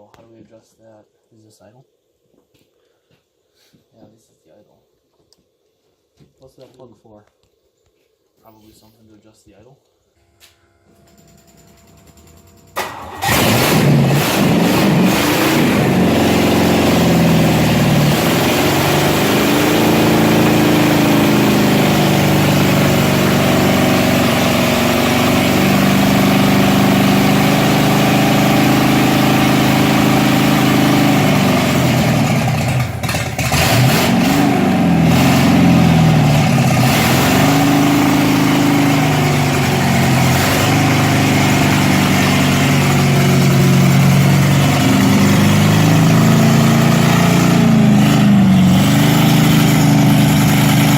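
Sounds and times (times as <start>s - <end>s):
car engine revving: 11.1s - 50.9s.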